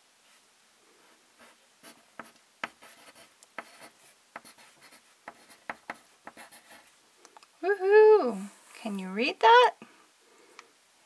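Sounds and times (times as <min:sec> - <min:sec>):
crayon scratching on paper: 0:01.4 - 0:06.9.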